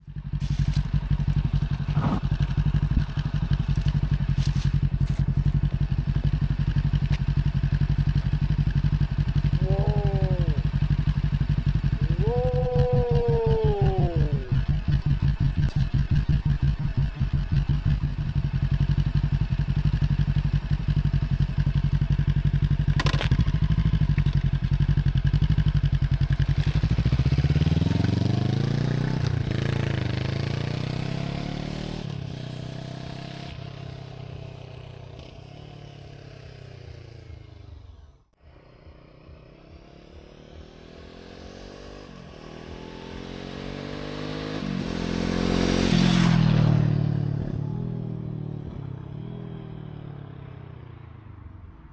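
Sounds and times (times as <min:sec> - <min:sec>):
motorcycle engine revving: 0:00.0 - 0:51.9.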